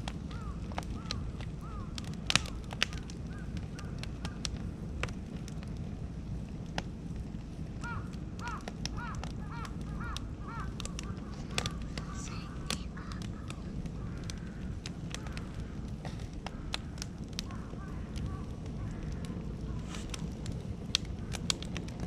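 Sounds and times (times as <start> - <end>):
wood fire crackling and popping: 0.0 - 22.0
birds calling: 0.3 - 4.5, 7.8 - 20.2.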